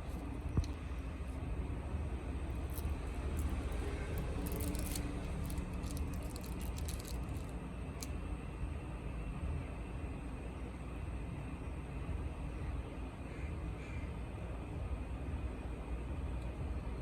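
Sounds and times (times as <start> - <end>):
small parts and tools clicking: 0.0 - 0.8, 2.4 - 8.1
low background rumble: 0.0 - 17.0.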